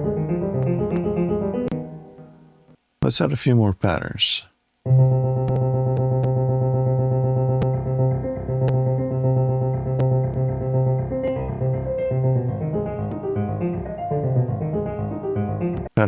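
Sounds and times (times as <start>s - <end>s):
electronic sequencer music: 4.9s - 15.9s.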